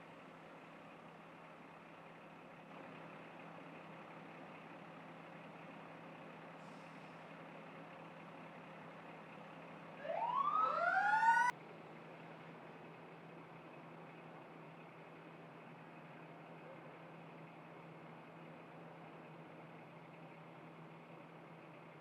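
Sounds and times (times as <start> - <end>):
siren wailing: 10.0 - 11.5.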